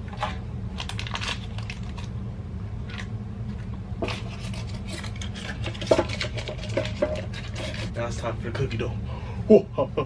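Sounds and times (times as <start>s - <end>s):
steady low hum: 0.0s - 10.0s
butter scraping in air fryer basket: 4.0s - 8.6s.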